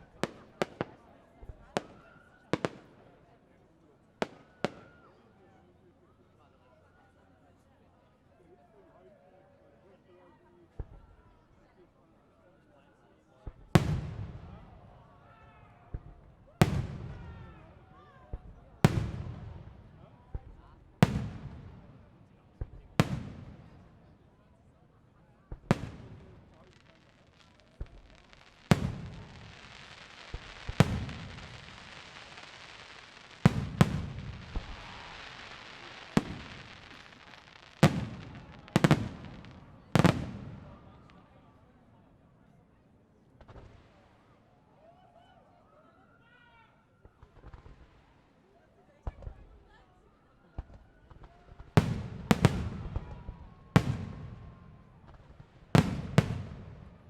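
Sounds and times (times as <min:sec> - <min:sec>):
fireworks bursting with echo: 0:13.5 - 0:24.4, 0:25.5 - 0:41.4, 0:51.1 - 0:57.0.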